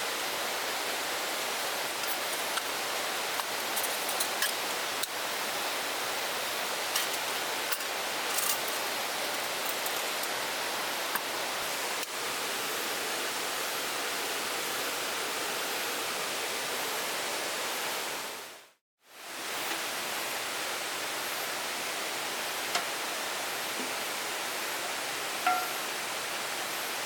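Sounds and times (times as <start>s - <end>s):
mountain stream rushing: 0.0s - 18.2s.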